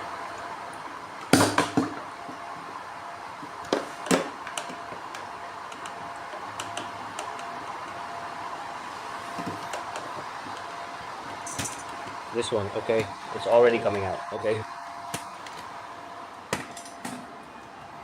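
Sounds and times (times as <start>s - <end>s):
generator humming: 4.2s - 18.0s.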